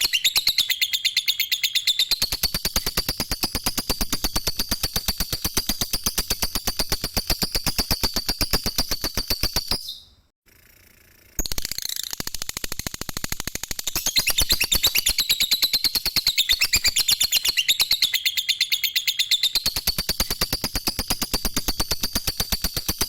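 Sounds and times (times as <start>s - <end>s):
lovebird chattering high chirps: 0.0s - 3.6s, 13.9s - 22.9s.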